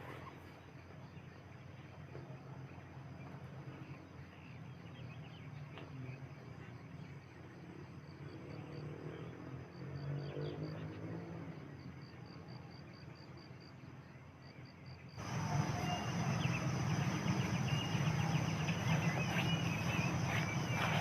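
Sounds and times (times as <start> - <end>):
bird chirps: 15.2 - 21.0
high pulsing chirp: 15.2 - 21.0
steady low hum: 15.2 - 21.0.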